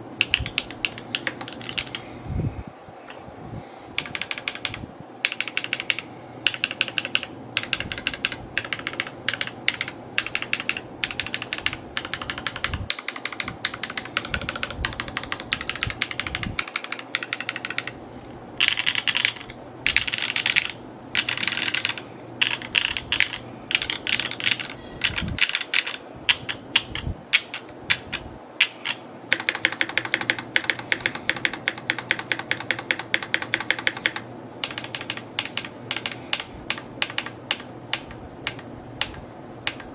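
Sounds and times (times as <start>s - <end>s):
fast mechanical keyboard typing: 0.2s - 2.1s, 4.0s - 18.0s, 18.6s - 39.9s.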